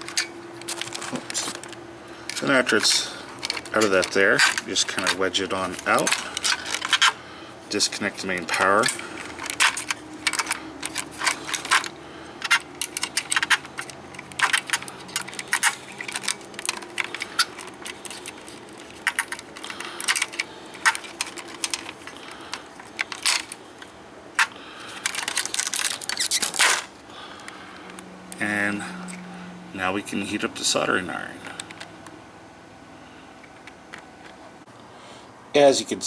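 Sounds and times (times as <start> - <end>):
plastic and metal clicks and rattles: 0.0 - 7.2, 8.0 - 28.0.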